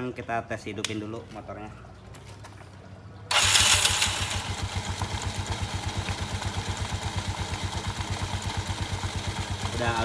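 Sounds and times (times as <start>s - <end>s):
scooter engine starting and idling: 3.3s - 10.0s.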